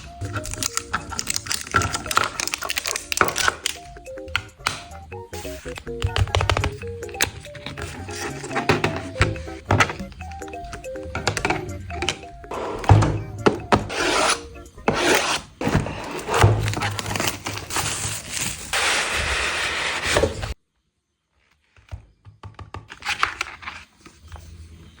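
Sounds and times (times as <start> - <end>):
packaging rubbing and scraping: 0.0 - 3.9, 6.5 - 10.1, 12.5 - 20.6.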